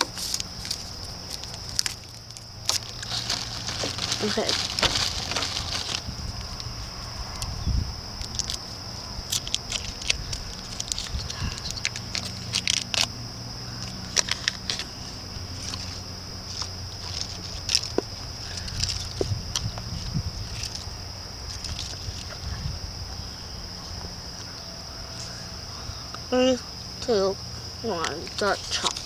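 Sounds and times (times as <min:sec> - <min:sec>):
wrappers crinkling: 0:00.0 - 0:06.7, 0:08.2 - 0:13.1, 0:13.8 - 0:22.5.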